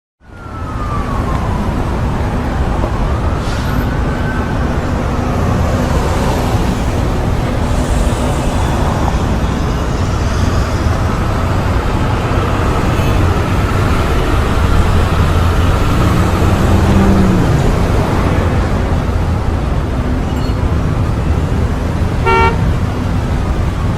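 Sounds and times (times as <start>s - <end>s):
distant siren wailing: 0.2s - 19.5s
city traffic rumble: 0.2s - 23.9s
low engine or horn sound: 20.1s - 23.1s.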